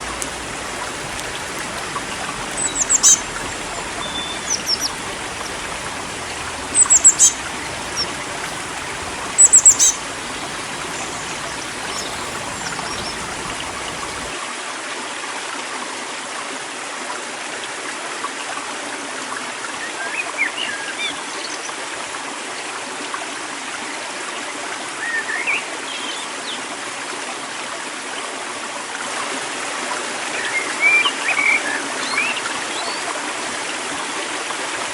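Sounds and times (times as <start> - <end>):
small birds chirping: 0.0 - 14.4
river water running: 0.0 - 14.5.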